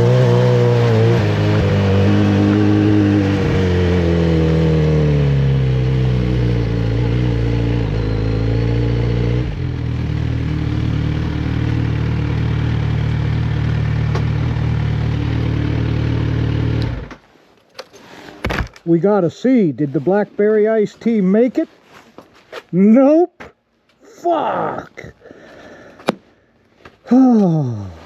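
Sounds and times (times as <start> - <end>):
motorcycle engine winding down to idle: 6.3 - 17.2.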